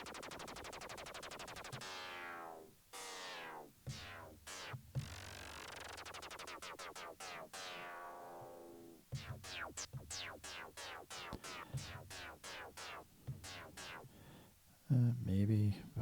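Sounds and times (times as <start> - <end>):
falling-pitch synth sweeps: 0.0 - 14.1
low thumps: 9.1 - 14.2.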